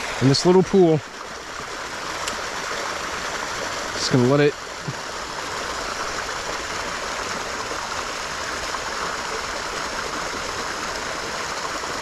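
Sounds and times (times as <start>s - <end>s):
stream splashing over waterfall: 0.0s - 12.0s.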